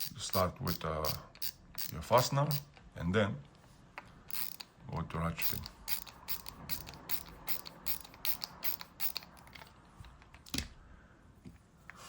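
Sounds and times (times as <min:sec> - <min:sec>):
ratchet screwdriver clicking: 0:00.0 - 0:02.8, 0:04.3 - 0:04.7, 0:05.4 - 0:09.7.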